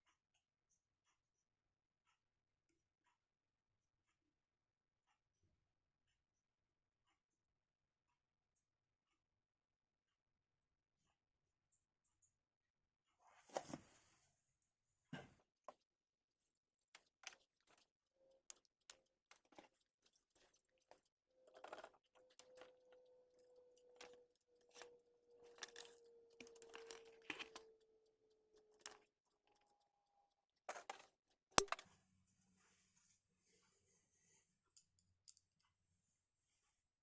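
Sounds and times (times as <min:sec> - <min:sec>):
sharp click: 0:31.6 - 0:31.8.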